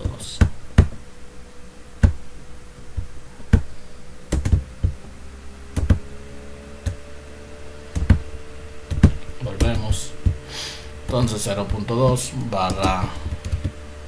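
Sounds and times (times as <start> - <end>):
faint steady hum: 0.0 - 14.0
computer keyboard keystrokes: 4.3 - 4.6.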